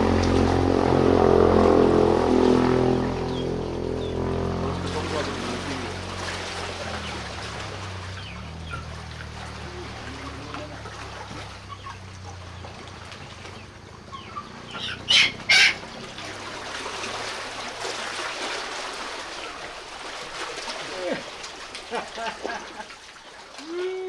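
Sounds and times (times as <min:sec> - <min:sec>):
low engine hum: 0:00.0 - 0:21.8
lake water washing: 0:00.0 - 0:24.0
chicken squawking: 0:14.1 - 0:16.0.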